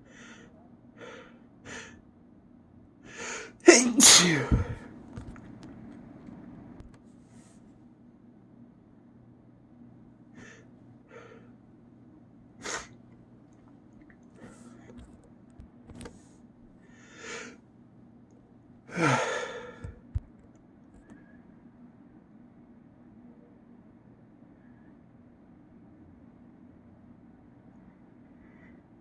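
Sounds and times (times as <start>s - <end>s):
man sneezing loudly: 3.5s - 4.9s, 18.9s - 19.8s.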